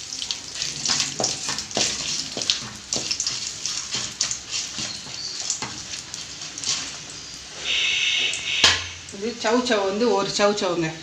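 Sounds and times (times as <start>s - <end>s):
food crackling in hot oil: 0.0s - 10.6s
spatula scraping pan: 0.5s - 9.1s.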